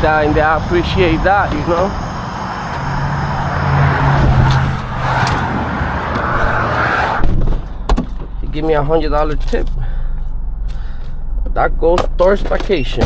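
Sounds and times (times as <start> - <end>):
rushing noise: 0.0 - 7.9
vehicle engine hum: 0.0 - 13.0.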